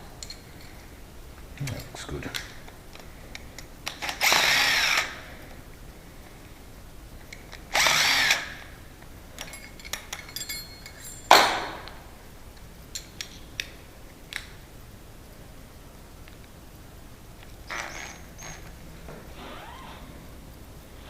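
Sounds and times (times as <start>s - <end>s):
light clicks of metal parts: 0.2s - 4.0s, 9.0s - 12.0s, 12.6s - 14.6s
power drill burst: 4.0s - 5.2s, 7.7s - 8.6s, 17.7s - 18.6s.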